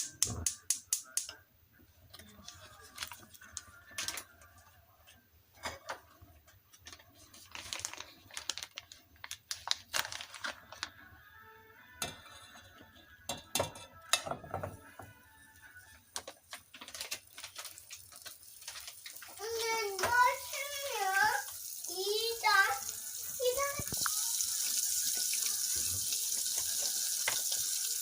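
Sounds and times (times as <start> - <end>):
kitchen utensils tapping and clicking: 0.0 - 1.4, 12.0 - 15.2, 16.1 - 20.4.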